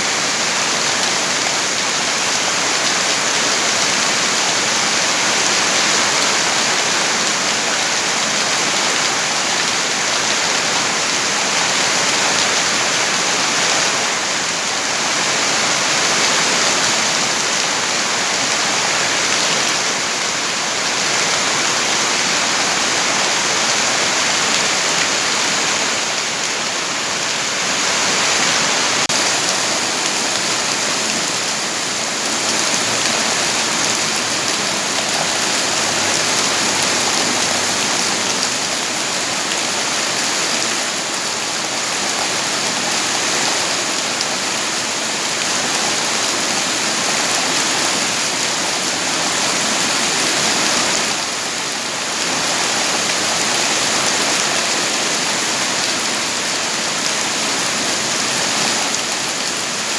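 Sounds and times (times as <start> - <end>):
heavy rain hissing: 19.9 - 44.0.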